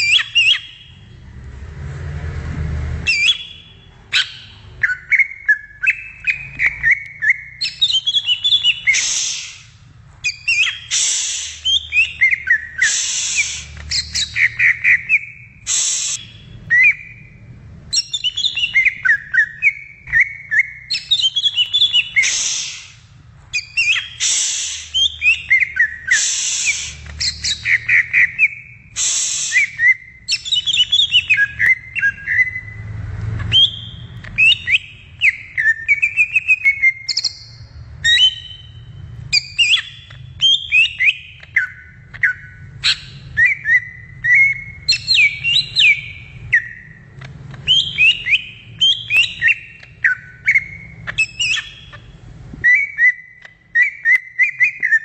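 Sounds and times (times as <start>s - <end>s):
bird whistling song: 0.0s - 1.1s, 3.0s - 55.0s
harsh rasping bird notes: 2.9s - 17.2s, 17.9s - 37.3s.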